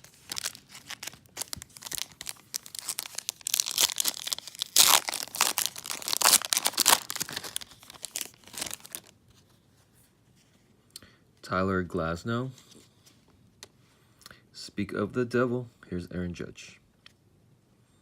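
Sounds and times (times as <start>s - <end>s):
foil wrapper tearing and crinkling: 0.0s - 9.1s.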